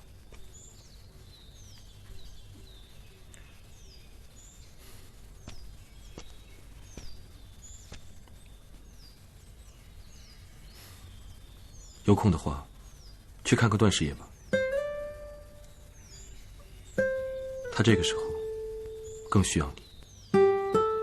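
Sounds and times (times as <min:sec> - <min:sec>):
birds chirping: 0:00.0 - 0:21.0
faint background noise: 0:00.0 - 0:21.0
faint clicks: 0:03.3 - 0:03.5.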